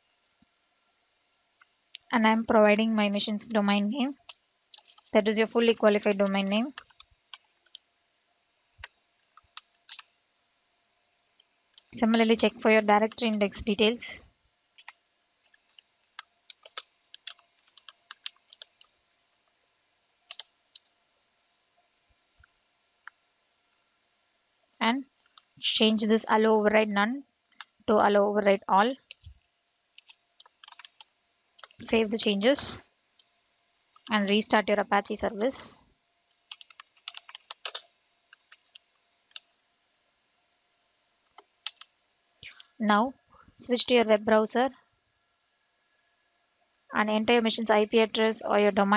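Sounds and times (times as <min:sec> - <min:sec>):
computer keyboard keys clicking: 0:04.2 - 0:05.1, 0:06.2 - 0:07.8, 0:08.8 - 0:10.1, 0:14.8 - 0:18.9, 0:20.3 - 0:21.0, 0:30.0 - 0:31.9, 0:36.5 - 0:39.6, 0:41.3 - 0:41.9.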